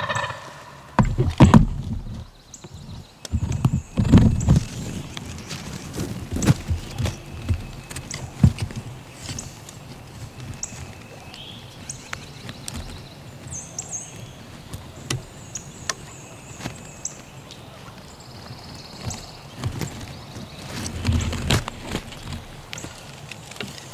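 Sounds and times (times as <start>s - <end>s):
knocks and rustling on ground: 0.0s - 11.0s, 17.6s - 23.9s
small birds chirping: 0.0s - 23.9s.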